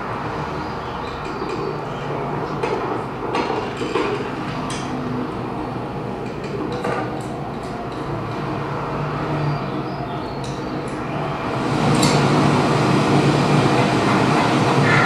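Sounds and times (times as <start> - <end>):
steady rumbling noise: 11.0 - 15.0.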